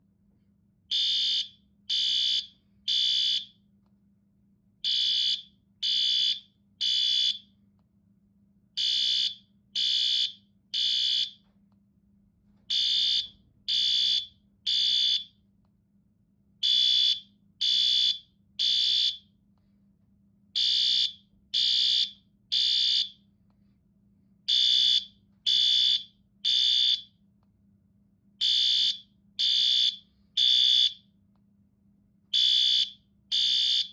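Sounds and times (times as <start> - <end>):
fire alarm high-pitched beeps: 0.9 - 3.6, 4.8 - 7.5, 8.8 - 11.4, 12.7 - 15.4, 16.6 - 19.3, 20.6 - 23.2, 24.5 - 27.1, 28.4 - 31.1, 32.4 - 33.9.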